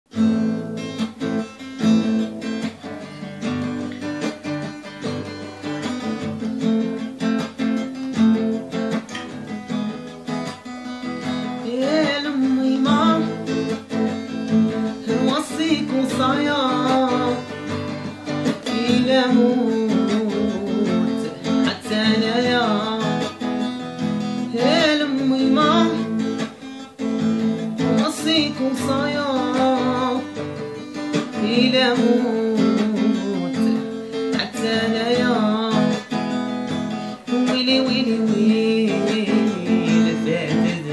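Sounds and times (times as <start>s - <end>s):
acoustic guitar playing: 0.1s - 40.9s
man singing: 11.1s - 40.9s.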